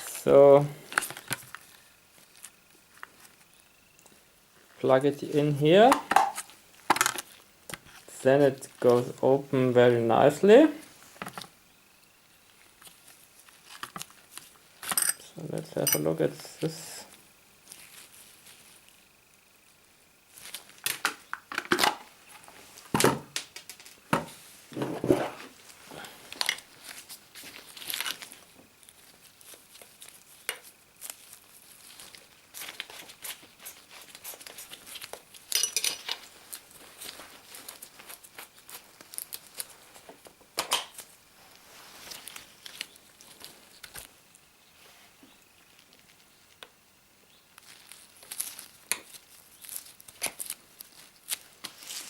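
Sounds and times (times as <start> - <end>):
plastic wrapping crinkling: 0.0 - 3.6, 12.4 - 15.0, 17.6 - 19.0, 20.3 - 46.7, 47.5 - 52.0.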